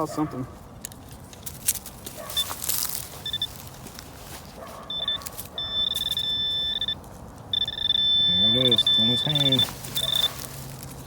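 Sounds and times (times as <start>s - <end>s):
soil scraping and crunching: 0.0s - 11.0s
metal detector beeps: 2.3s - 3.6s, 4.9s - 10.5s.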